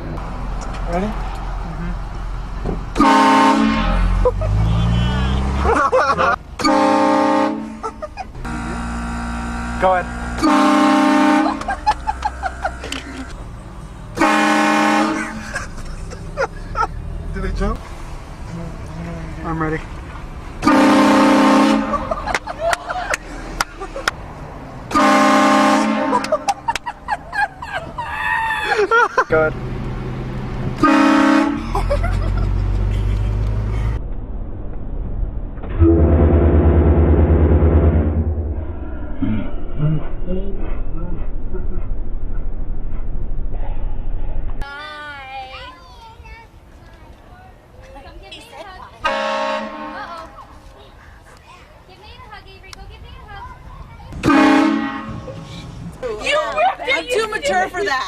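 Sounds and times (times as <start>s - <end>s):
vehicle rumble: 0.0s - 58.0s
air horn blasts: 3.0s - 5.6s, 6.6s - 11.8s, 14.2s - 15.4s, 20.6s - 22.2s, 24.9s - 26.6s, 30.8s - 31.8s, 35.7s - 38.5s, 49.0s - 50.3s, 54.2s - 55.4s
pulsing low hum: 33.7s - 44.6s.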